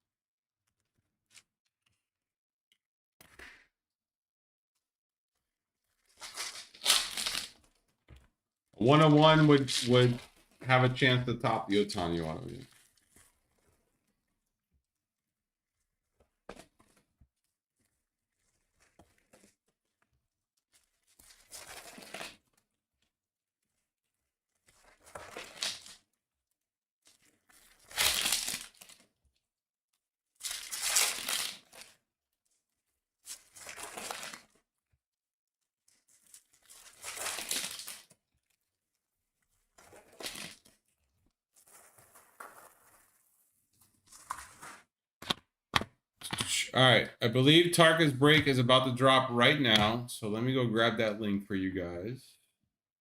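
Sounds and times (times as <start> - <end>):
foil wrappers tearing: 6.1 - 7.8, 21.2 - 22.5, 24.8 - 26.0, 27.1 - 29.1, 30.4 - 32.0, 33.3 - 34.6, 36.1 - 38.1, 39.8 - 40.8.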